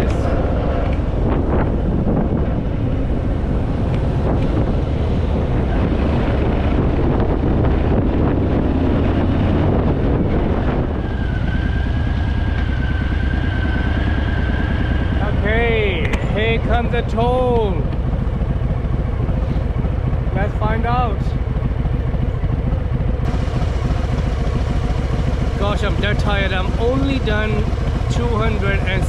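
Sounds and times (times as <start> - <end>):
motorcycle engine running: 0.0 - 29.0
wind buffeting microphone: 0.0 - 29.0
thin steady whistle: 10.9 - 15.2.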